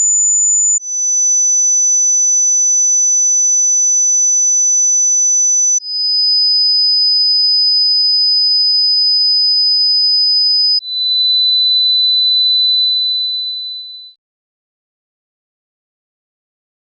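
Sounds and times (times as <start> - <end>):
high-pitched sine tones: 0.0 - 5.8.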